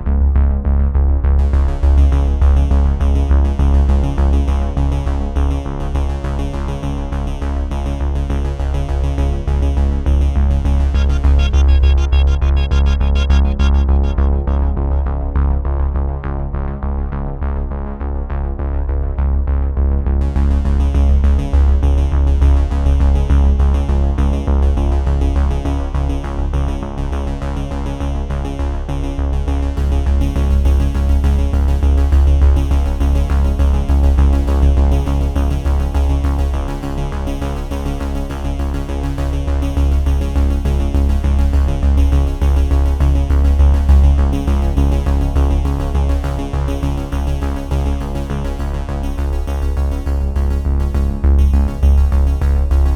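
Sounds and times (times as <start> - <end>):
electronic music with heavy bass: 9.5 - 16.6, 39.2 - 52.9.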